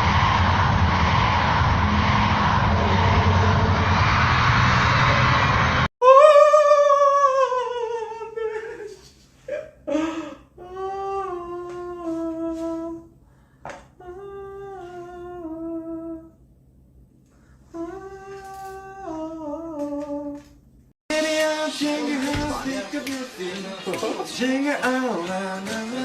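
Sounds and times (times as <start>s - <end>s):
person humming a tune: 9.9s - 13.1s, 14.0s - 16.4s, 17.7s - 20.4s
music with singing: 21.1s - 26.0s.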